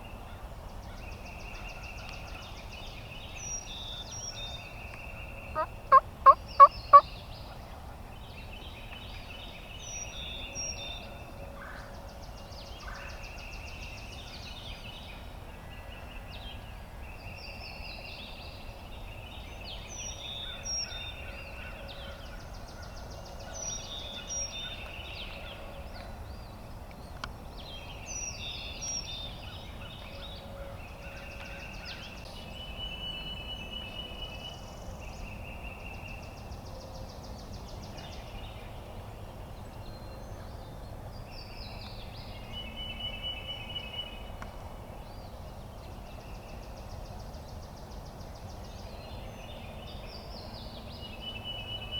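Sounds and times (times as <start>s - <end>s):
songbirds chirping: 0.0s - 51.9s
turkey yelps: 5.6s - 7.0s.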